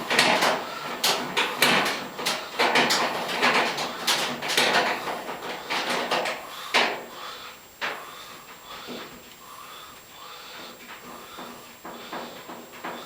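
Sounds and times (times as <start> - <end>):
hands clicking and scraping sheet metal: 0.0 - 7.1, 10.6 - 13.0.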